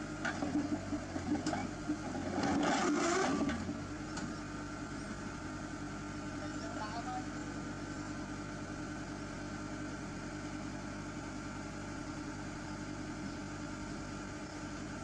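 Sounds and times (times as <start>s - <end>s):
heavy machine engine idling: 0.0s - 15.0s.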